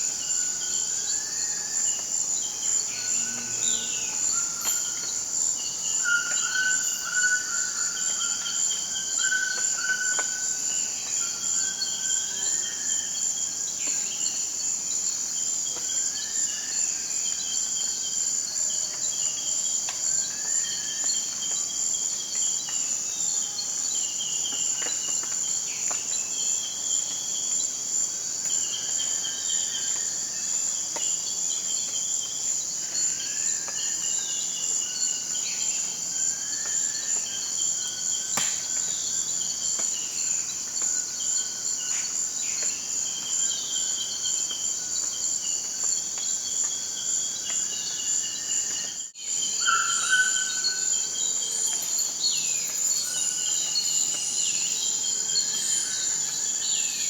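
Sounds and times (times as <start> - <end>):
insects droning: 0.0 - 57.0
birds whistling and chirping: 49.3 - 57.0.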